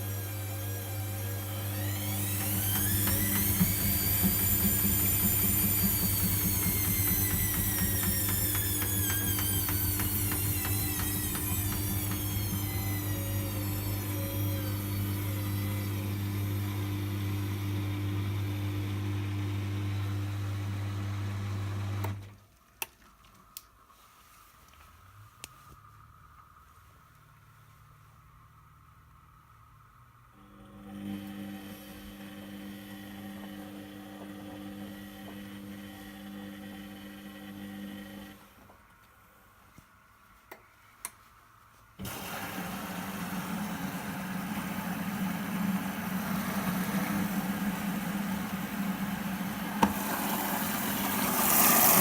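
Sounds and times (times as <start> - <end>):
washing machine motor whining: 0.0 - 22.2, 30.4 - 38.4, 42.0 - 52.0.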